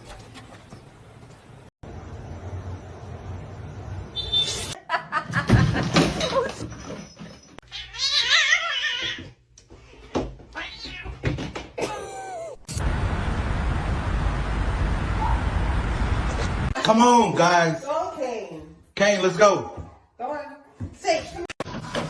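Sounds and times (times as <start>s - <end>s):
cats meowing and yowling: 7.6s - 9.3s.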